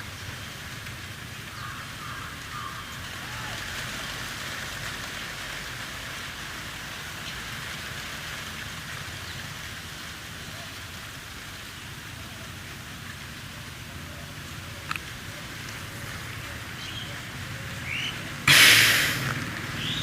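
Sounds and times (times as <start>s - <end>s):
breath hissing through throat: 18.5s - 19.4s.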